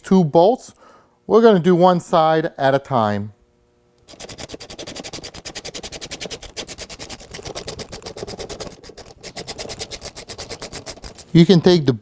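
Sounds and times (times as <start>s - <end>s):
fast mechanical clicking: 4.0s - 11.4s.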